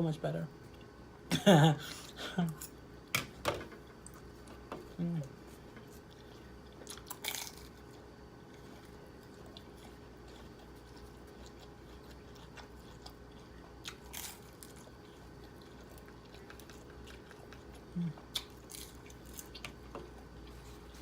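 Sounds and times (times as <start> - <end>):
crunch of fried food bitten: 6.8 - 8.0, 8.8 - 19.8.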